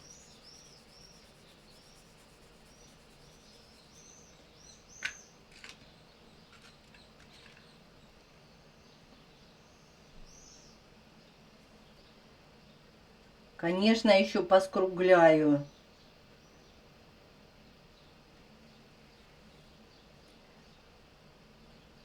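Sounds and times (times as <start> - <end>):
bird chirping: 0.0 - 12.8.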